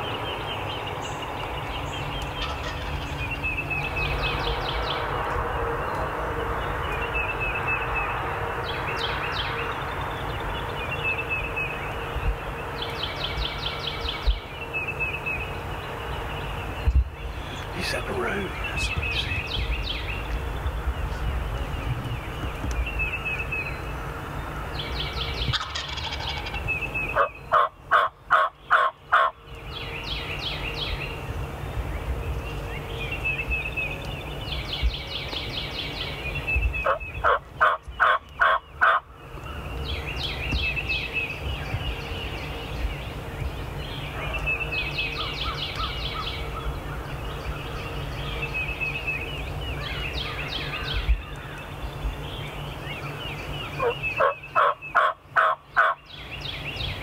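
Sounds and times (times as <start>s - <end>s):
songbirds singing: 0.0s - 57.0s
turkey call hen yelps: 25.5s - 26.6s, 36.8s - 39.0s, 53.8s - 56.0s.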